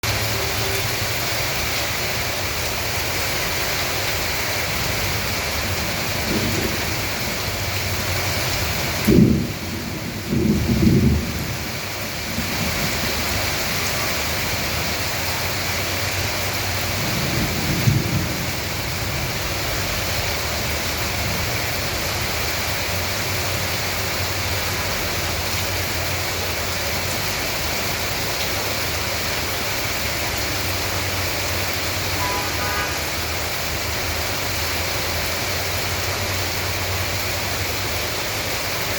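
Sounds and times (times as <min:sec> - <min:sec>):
heavy rain falling: 0:00.0 - 0:38.9
low rumbles: 0:04.9 - 0:22.8.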